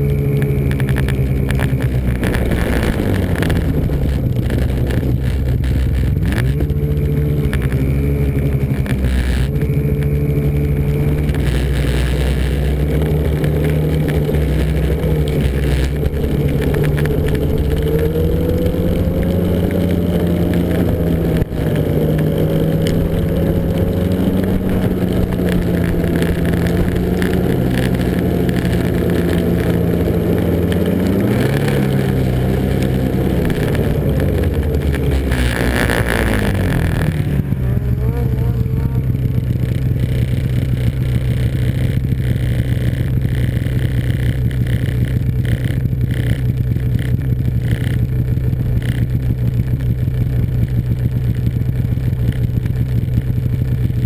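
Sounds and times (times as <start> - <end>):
snowmobile engine running: 0.0 - 54.0.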